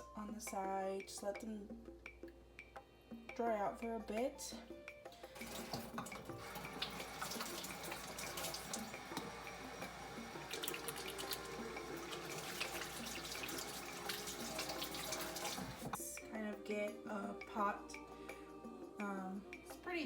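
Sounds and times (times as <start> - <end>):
faucet running into sink: 5.3 - 16.0.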